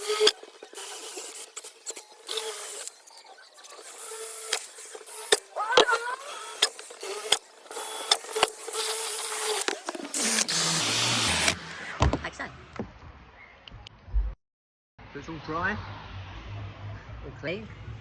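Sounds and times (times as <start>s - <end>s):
drill whining through sheet metal: 0.0s - 11.8s.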